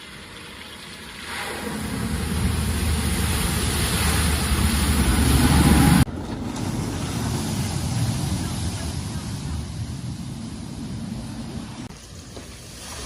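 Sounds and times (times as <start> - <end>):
water rushing and splashing: 0.0 - 13.0
vehicle engine running: 1.7 - 11.9.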